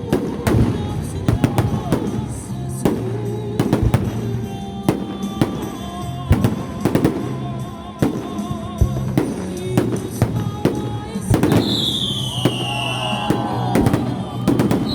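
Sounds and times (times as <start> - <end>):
background music: 0.0 - 14.9
fireworks bursting: 0.0 - 14.9.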